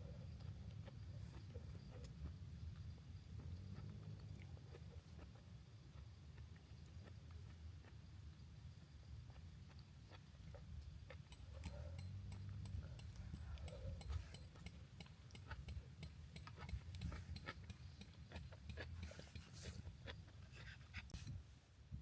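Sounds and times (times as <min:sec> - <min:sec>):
low steady rumble: 0:00.0 - 0:22.0.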